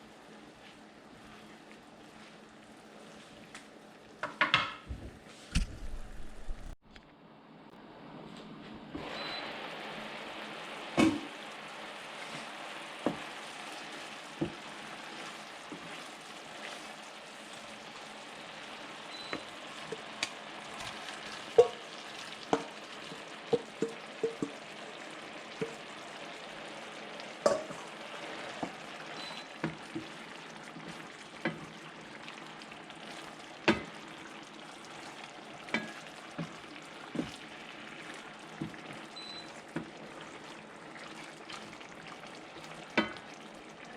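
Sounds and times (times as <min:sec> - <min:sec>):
food sizzling in a pan: 0:00.0 - 0:04.5, 0:09.0 - 0:43.9
utensil knocking against pan: 0:21.6 - 0:21.8, 0:23.5 - 0:24.6.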